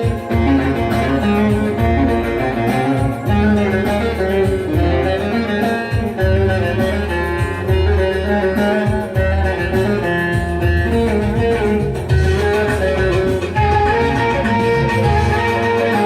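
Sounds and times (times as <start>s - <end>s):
bowed strings: 0.0s - 16.0s
plucked-string melody: 0.0s - 16.0s
pulsing bass: 0.0s - 16.0s
steady beat: 0.0s - 16.0s.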